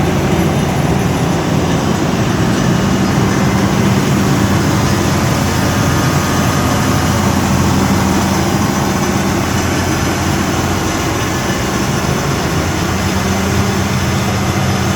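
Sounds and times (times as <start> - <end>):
diesel generator running: 0.0 - 14.9.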